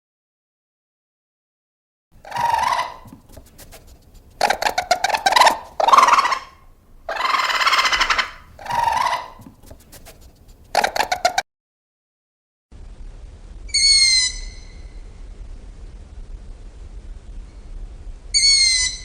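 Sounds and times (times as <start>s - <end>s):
harsh animal calls: 2.2s - 11.4s.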